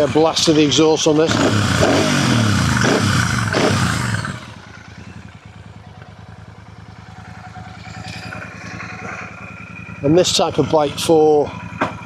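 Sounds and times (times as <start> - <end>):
motorcycle engine revving and idling: 0.0 - 12.0.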